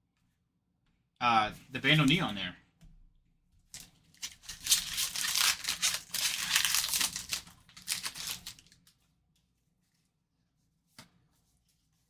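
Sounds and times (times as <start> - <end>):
plastic wrapper tearing and crinkling: 4.1 - 8.9.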